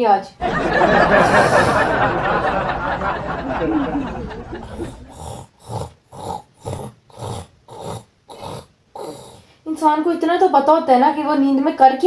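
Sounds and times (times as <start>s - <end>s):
man fake snoring: 0.8s - 9.6s.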